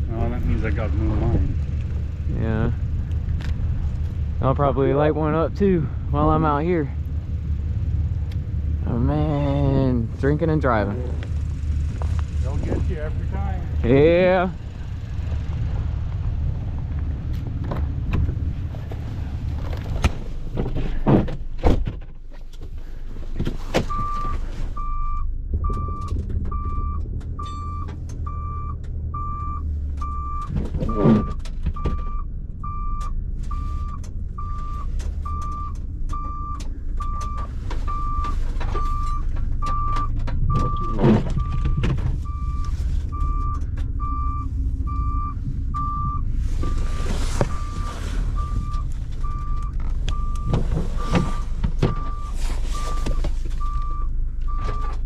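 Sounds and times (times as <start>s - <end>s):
truck engine running: 0.0s - 55.0s
reversing alarm beeping: 23.9s - 55.0s.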